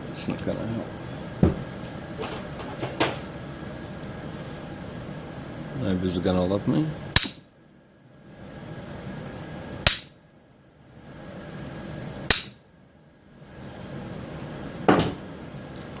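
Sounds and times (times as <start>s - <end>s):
hammer striking steel padlock: 9.9s - 10.1s, 12.3s - 12.6s.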